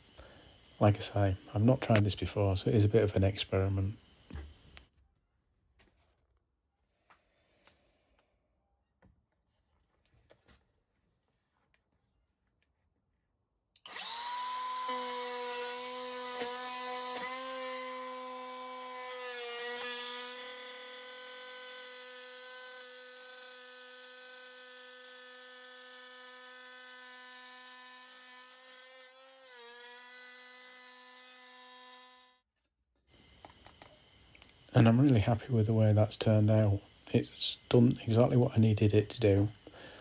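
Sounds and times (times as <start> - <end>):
electric router whining: 13.8 - 32.3.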